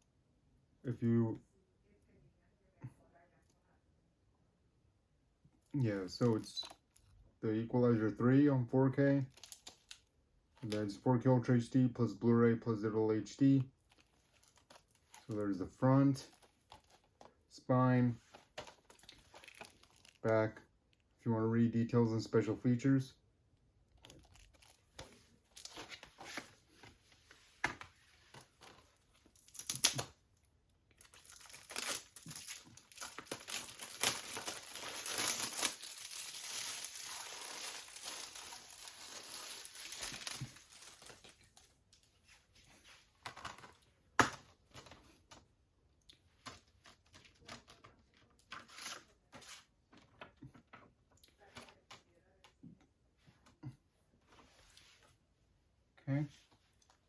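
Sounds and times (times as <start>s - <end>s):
plastic wrap crinkling: 9.2s - 10.8s, 13.8s - 15.5s, 16.2s - 17.4s, 18.2s - 20.3s, 23.9s - 26.6s, 28.3s - 42.2s.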